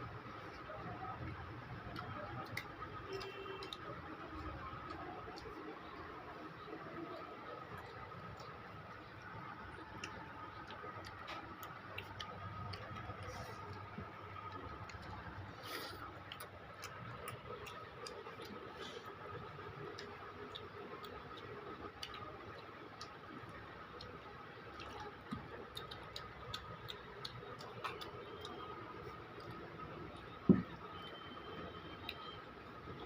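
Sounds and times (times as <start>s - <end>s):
faint steady hum: 0.0s - 33.0s.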